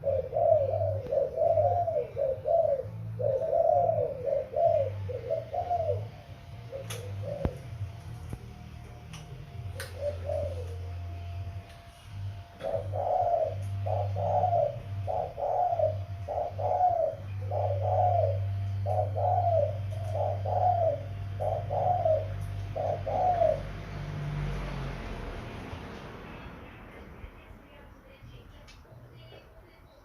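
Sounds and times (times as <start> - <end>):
dove cooing: 0.0 - 8.5, 9.6 - 11.6, 12.3 - 25.3
low steady hum: 0.0 - 30.0.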